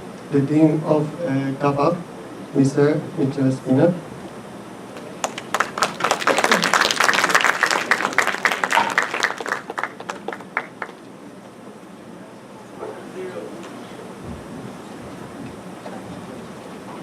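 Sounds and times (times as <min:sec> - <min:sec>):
audience applauding: 0:05.0 - 0:11.1.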